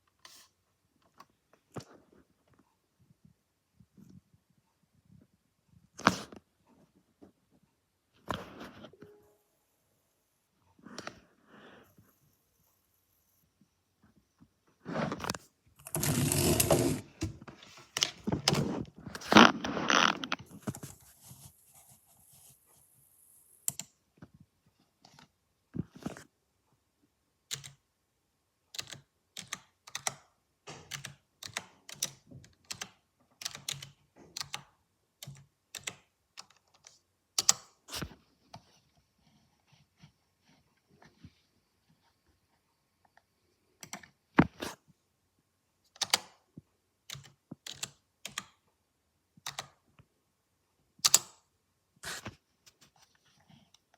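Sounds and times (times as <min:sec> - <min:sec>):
computer grinding noise: 0:15.8 - 0:17.2.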